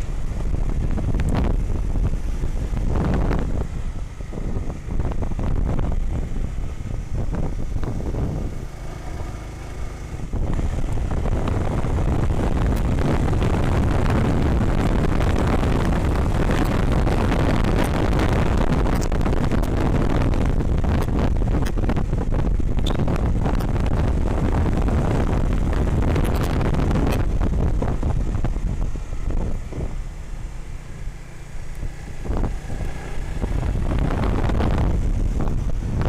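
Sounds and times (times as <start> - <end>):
motorcycle engine running: 0.0 - 36.0
wind rush on microphone: 0.0 - 36.0.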